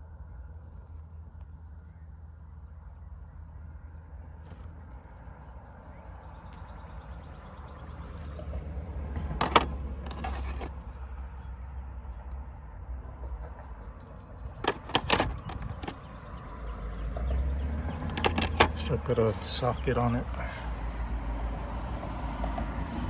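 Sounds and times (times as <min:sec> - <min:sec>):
metallic tool clicks and rattles: 0:14.6 - 0:16.1, 0:17.9 - 0:18.8.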